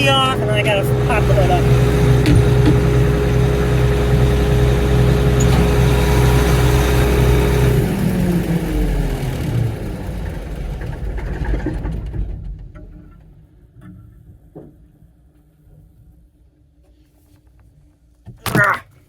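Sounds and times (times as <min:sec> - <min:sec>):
farm machine engine running: 0:00.0 - 0:12.6
engine winding down: 0:00.0 - 0:13.5.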